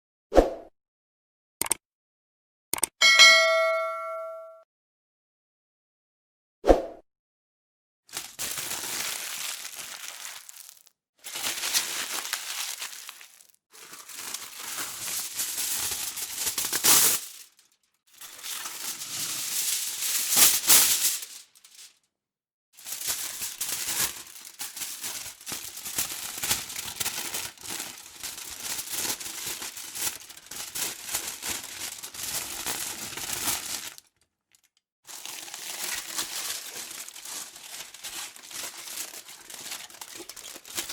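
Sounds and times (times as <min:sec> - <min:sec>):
sharp click: 0:02.7 - 0:03.0
aluminium foil crumpling: 0:08.1 - 0:22.0, 0:22.8 - 0:40.9.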